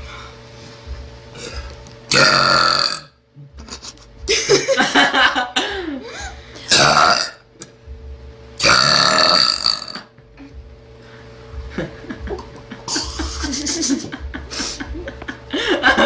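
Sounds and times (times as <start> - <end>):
girl burping loudly: 2.1 - 3.1, 6.7 - 7.4, 8.6 - 10.1.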